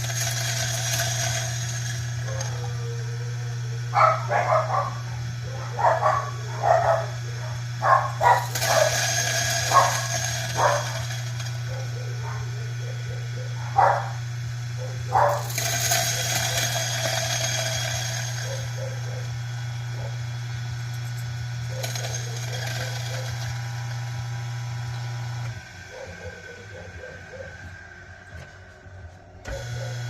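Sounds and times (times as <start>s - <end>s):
coffee beans crunching: 0.0s - 2.8s, 5.5s - 14.2s, 14.8s - 19.4s, 20.0s - 24.0s
grinding hiss: 0.0s - 2.8s, 3.8s - 30.0s
coffee grinder motor hum: 0.0s - 30.0s.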